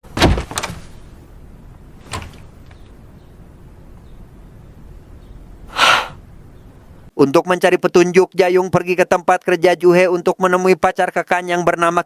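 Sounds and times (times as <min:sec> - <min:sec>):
heavy thuds: 0:00.0 - 0:01.2, 0:02.0 - 0:03.0.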